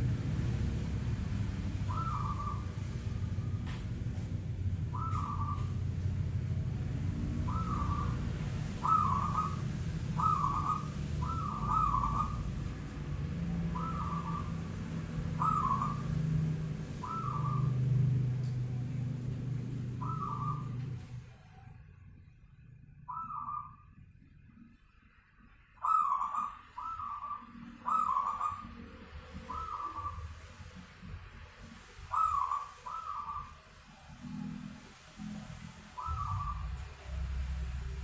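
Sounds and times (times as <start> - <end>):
steady low hum: 0.0 - 38.0
dove cooing: 1.9 - 2.8, 4.9 - 5.9, 7.4 - 12.6, 13.7 - 16.2, 17.0 - 18.0, 32.1 - 33.6, 36.0 - 37.3.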